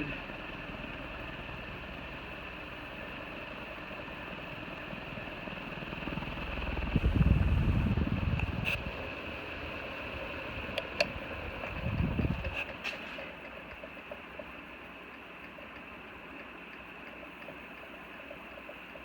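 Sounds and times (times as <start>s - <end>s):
ceiling fan motor hum: 0.0s - 19.0s
low rumble: 6.4s - 8.9s
faint clicks: 10.7s - 19.0s.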